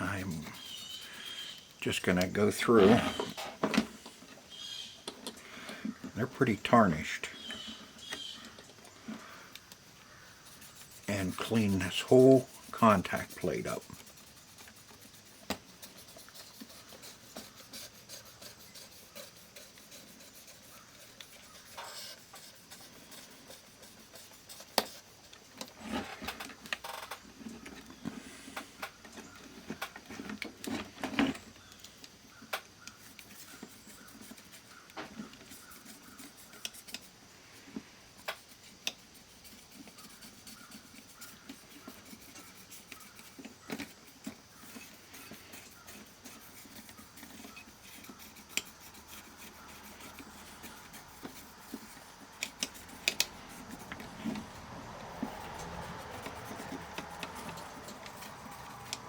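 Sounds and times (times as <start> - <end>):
pencil scrubbing metal contacts: 0.0 - 3.4, 10.2 - 25.8, 32.9 - 37.2, 38.2 - 59.0.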